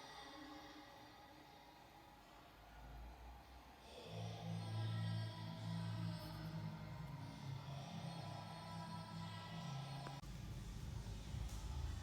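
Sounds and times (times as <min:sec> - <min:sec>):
bass-heavy music through walls: 0:04.0 - 0:12.0.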